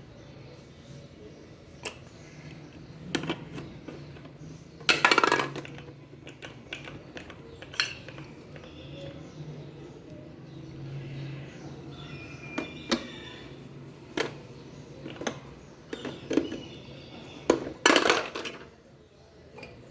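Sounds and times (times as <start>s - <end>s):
plastic toy pieces clattering: 2.7s - 8.8s, 17.4s - 18.8s.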